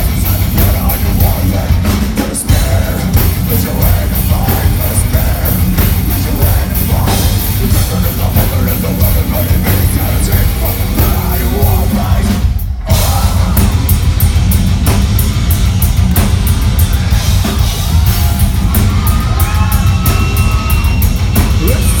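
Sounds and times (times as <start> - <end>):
heavy metal band playing live: 0.0 - 22.0
person yelling vocals: 21.6 - 22.0.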